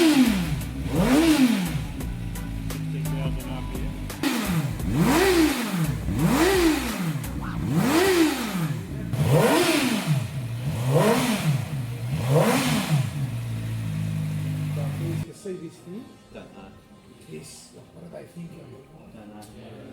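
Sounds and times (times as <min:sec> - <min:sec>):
motorcycle engine revving: 0:00.0 - 0:15.3.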